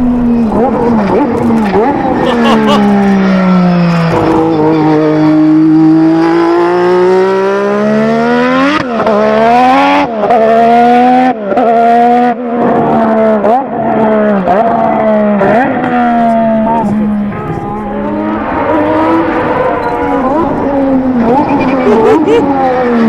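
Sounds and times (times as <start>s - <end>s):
racing car engine revving: 0.0s - 23.0s
quick gear changes: 0.4s - 4.6s.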